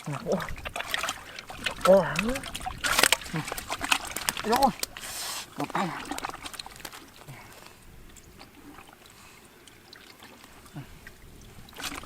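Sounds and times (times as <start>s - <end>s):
water trickling and sloshing: 0.0s - 12.0s
small clicks and ticks: 0.6s - 5.1s.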